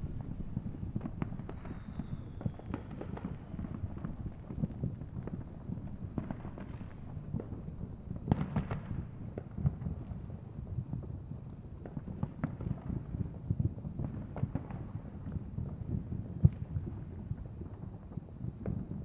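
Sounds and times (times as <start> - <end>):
fireworks crackling and banging: 0.0 - 10.4, 11.8 - 19.0.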